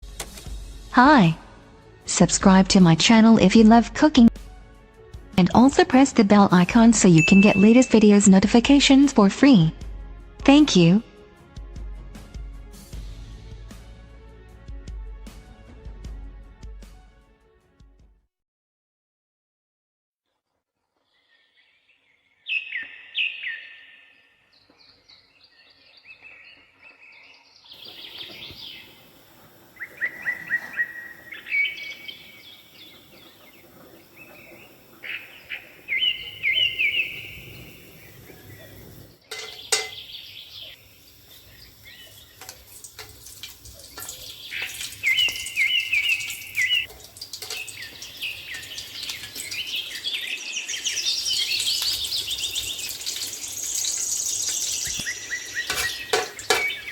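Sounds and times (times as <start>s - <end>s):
birds singing and chirping: 5.6s - 9.7s, 21.1s - 56.9s
background hiss: 27.8s - 56.9s.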